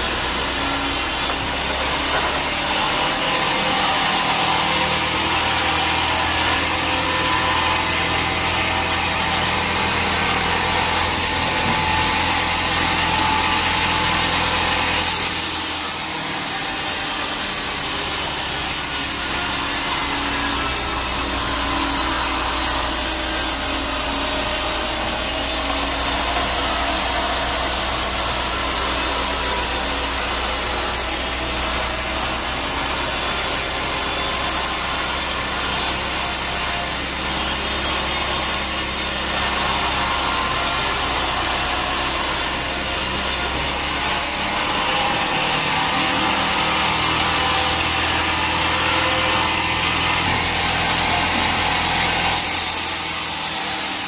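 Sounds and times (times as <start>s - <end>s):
bandsaw cutting wood: 0.0s - 54.0s.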